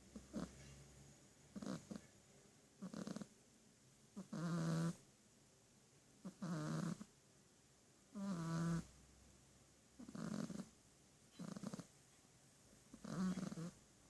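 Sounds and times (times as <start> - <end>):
pet snoring: 0.1 - 0.7, 1.5 - 2.1, 2.8 - 3.3, 4.2 - 5.0, 6.2 - 7.1, 8.1 - 8.9, 10.0 - 10.7, 11.3 - 11.9, 12.9 - 13.8.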